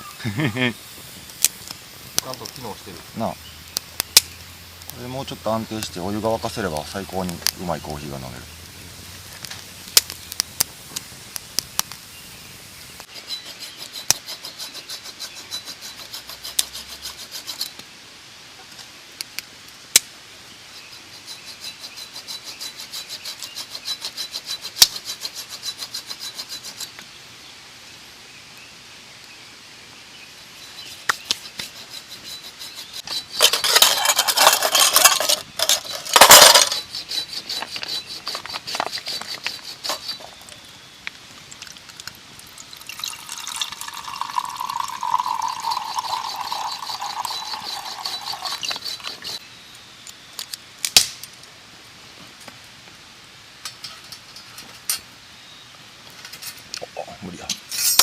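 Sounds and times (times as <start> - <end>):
wood fire crackling and popping: 0.9 - 13.2, 18.7 - 20.2, 33.0 - 49.4, 50.0 - 51.6
loud rubbing and scraping: 13.2 - 17.7, 21.1 - 26.9, 30.9 - 40.5, 46.0 - 49.4.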